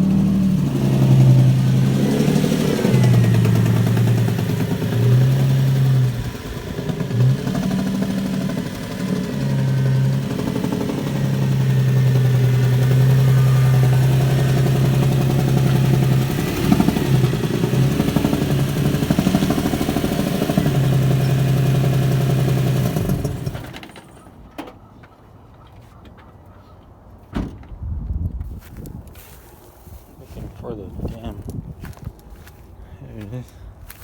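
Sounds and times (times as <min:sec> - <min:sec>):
car engine with leaking exhaust: 0:00.0 - 0:24.2
thump: 0:27.3 - 0:27.7.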